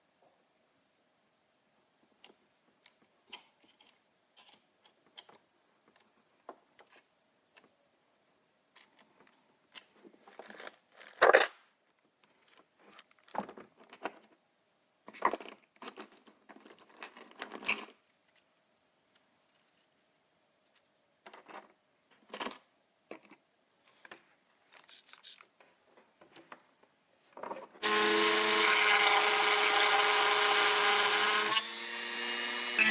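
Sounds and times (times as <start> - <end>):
small objects clicking and rustling: 8.7 - 11.5.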